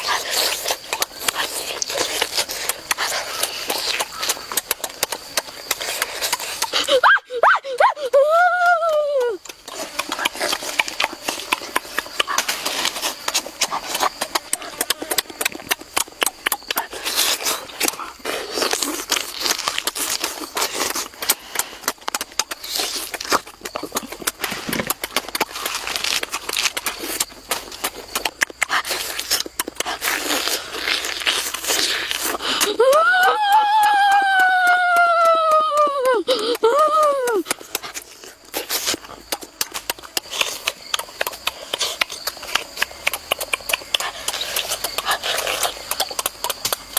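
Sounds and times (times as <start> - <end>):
chewing and crunching food: 0.0 - 46.9.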